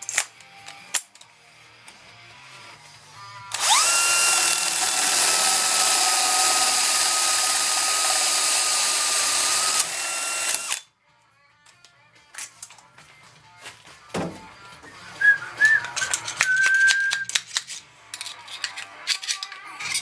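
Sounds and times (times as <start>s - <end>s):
power tool motor whine: 3.5s - 10.8s.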